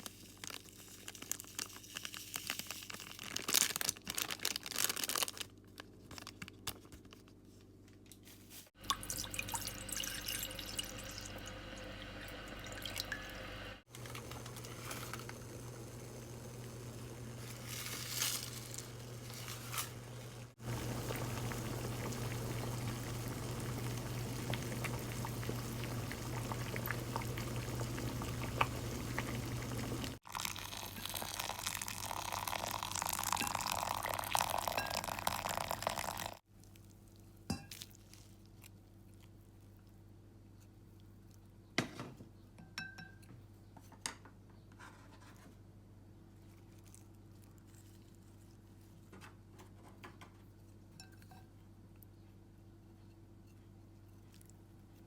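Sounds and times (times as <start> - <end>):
liquid being stirred: 8.8 - 11.5, 12.2 - 36.4
liquid pouring: 8.8 - 36.4.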